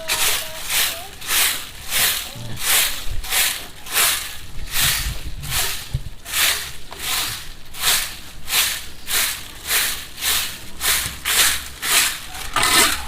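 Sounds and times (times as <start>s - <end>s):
broom sweeping leaves: 0.0s - 13.0s.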